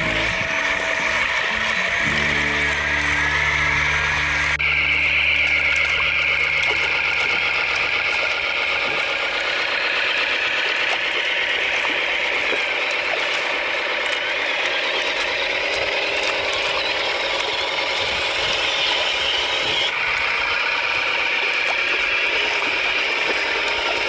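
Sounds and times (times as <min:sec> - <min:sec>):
high-pitched whine: 0:00.0 - 0:07.9
diesel engine running: 0:00.0 - 0:24.0.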